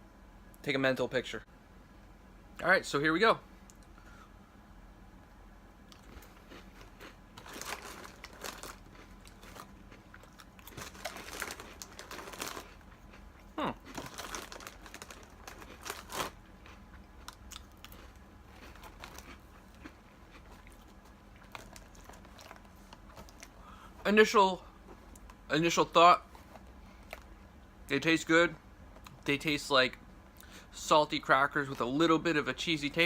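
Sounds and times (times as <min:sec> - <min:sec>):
person chewing crunchy crackers: 0:05.8 - 0:24.0.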